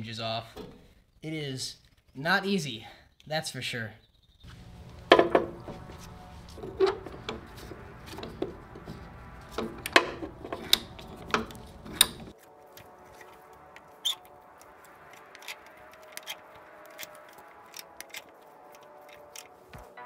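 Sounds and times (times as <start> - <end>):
low background hum: 4.4 - 12.3
metallic clicks and knocks: 6.6 - 12.3.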